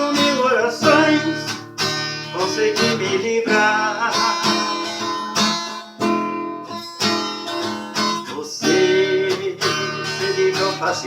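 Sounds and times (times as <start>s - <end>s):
acoustic guitar strumming chords: 0.0s - 11.0s.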